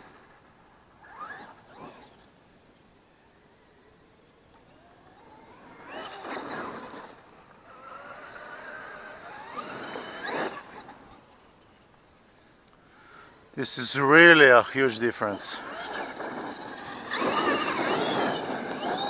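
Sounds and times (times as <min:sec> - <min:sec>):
electric toy truck motor whine: 0:01.0 - 0:02.4, 0:04.3 - 0:11.2, 0:15.3 - 0:19.0.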